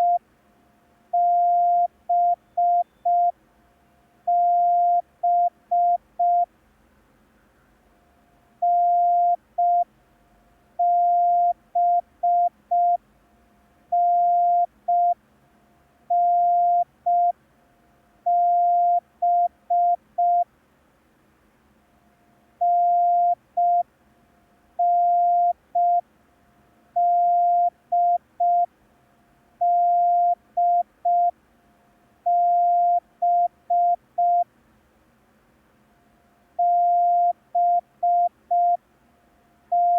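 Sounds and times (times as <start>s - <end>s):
morse code beeps: 1.2s - 3.3s, 36.6s - 38.8s.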